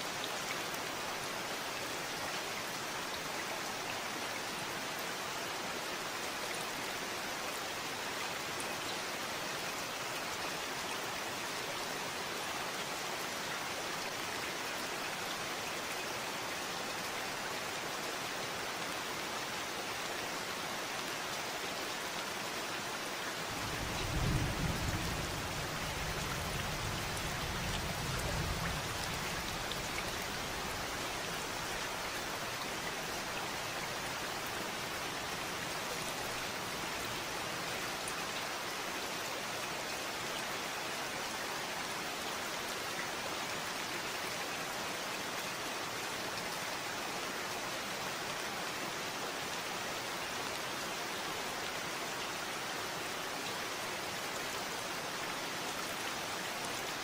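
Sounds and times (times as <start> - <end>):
steady rain patter: 0.0 - 57.0
thunder rumble: 23.6 - 29.6.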